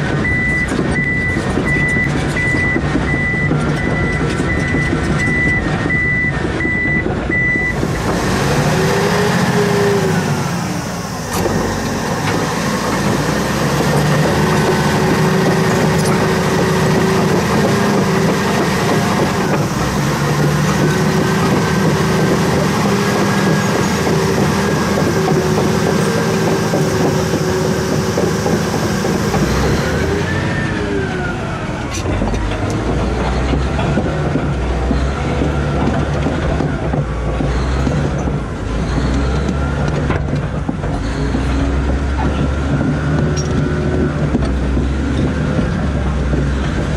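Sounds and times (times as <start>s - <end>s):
bulldozer engine revving: 0.0s - 46.9s
reversing alarm beeping: 0.2s - 8.0s.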